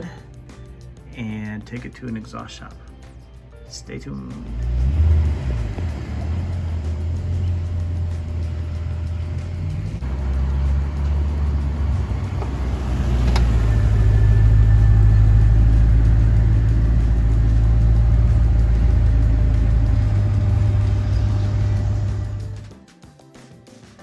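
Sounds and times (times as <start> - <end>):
car engine low drone: 4.4 - 22.7.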